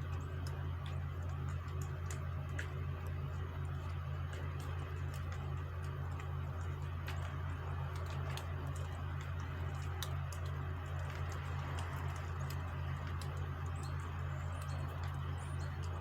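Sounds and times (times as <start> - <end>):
faint ticks and clicks: 0.0 - 16.0
low machine hum: 0.0 - 16.0.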